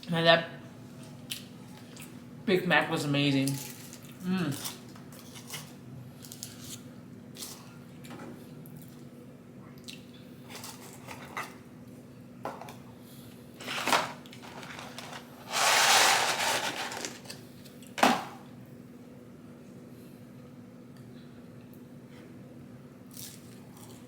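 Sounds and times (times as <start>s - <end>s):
packaging rustling: 13.6s - 17.4s.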